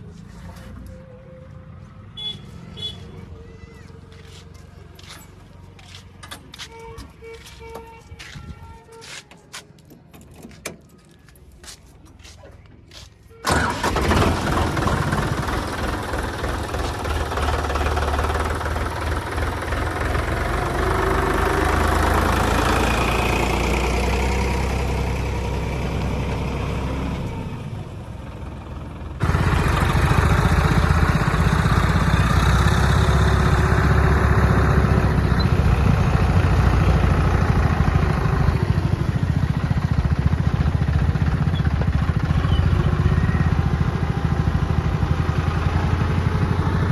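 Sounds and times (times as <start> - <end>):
tractor diesel engine running: 13.3 - 46.9
thresher running: 13.4 - 21.5.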